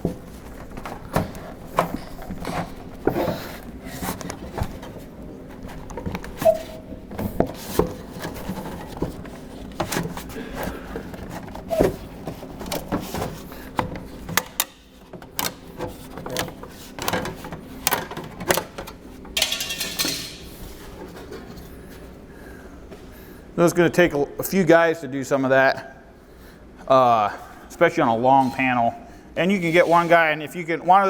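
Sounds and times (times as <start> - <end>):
metallic clicks and clanks: 16.3 - 20.5.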